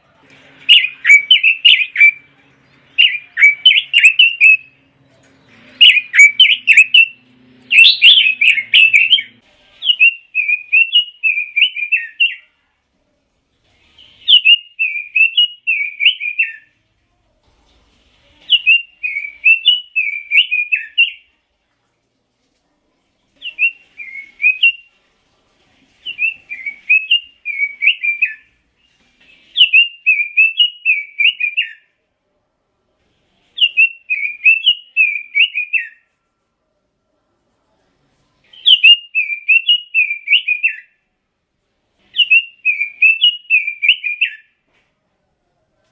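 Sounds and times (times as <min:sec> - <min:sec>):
high chattering bird notes: 0:00.6 - 0:12.5, 0:18.5 - 0:21.3, 0:26.0 - 0:31.8
bird warbling song: 0:05.4 - 0:12.4.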